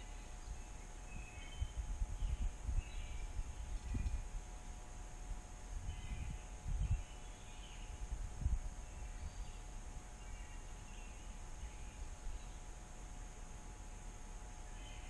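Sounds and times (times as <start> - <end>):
faint bird chirps: 0.0 - 4.3, 5.8 - 8.1, 8.7 - 12.8, 13.9 - 15.0
wind bumping the microphone: 1.1 - 9.7.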